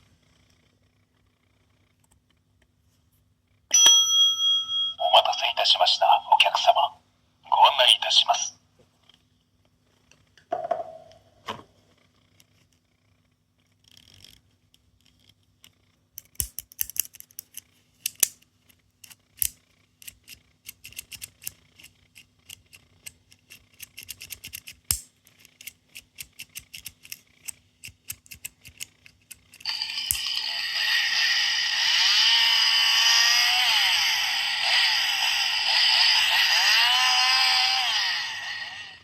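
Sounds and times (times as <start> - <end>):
loud noisy sound with ringing tones: 29.7 - 36.6.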